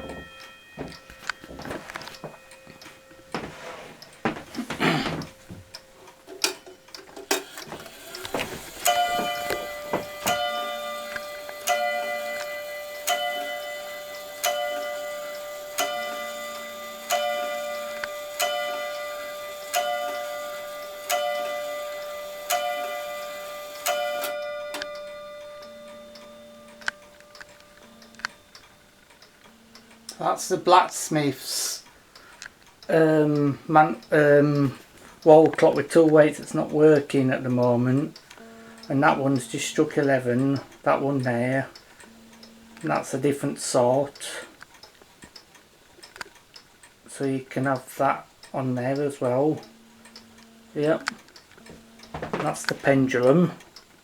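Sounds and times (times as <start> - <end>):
clock bell striking: 0.0 - 6.0, 7.4 - 31.4
clicks: 0.0 - 13.3
clock ticking: 0.0 - 54.0.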